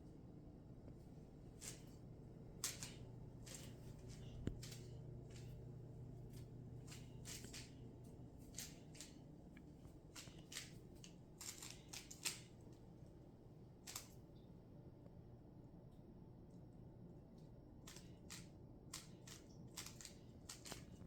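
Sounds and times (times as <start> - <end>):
puzzle cube plastic clicks: 17.9 - 21.0.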